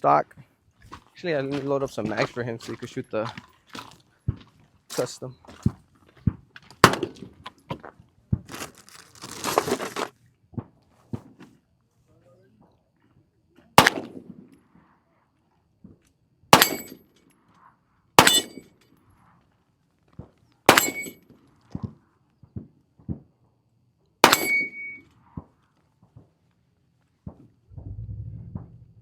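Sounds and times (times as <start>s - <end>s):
faint small cracks: 6.6s - 10.2s
pistol shots: 6.8s - 7.2s, 13.8s - 14.5s, 16.5s - 17.0s, 18.2s - 18.6s, 20.7s - 21.2s, 24.2s - 25.0s.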